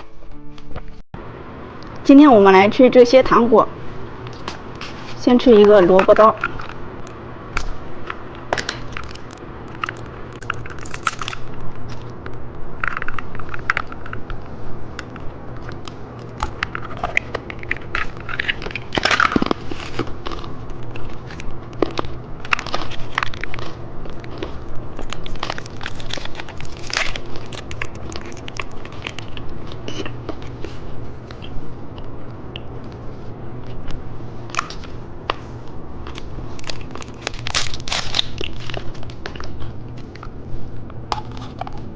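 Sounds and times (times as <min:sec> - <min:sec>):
low hum: 0:00.0 - 0:41.9
person crunching candy: 0:08.5 - 0:14.4, 0:15.0 - 0:31.6, 0:36.1 - 0:40.3.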